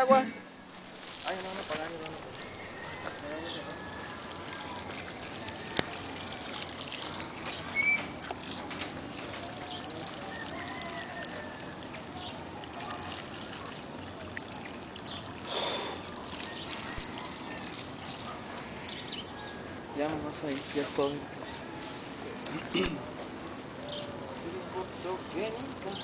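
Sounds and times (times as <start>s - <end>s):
water trickling onto embers: 0.6s - 26.0s.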